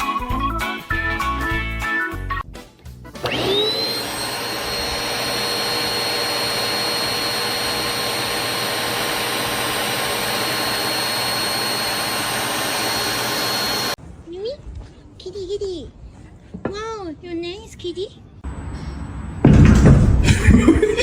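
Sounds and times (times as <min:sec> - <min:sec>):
vacuum cleaner motor running: 0:03.2 - 0:14.0.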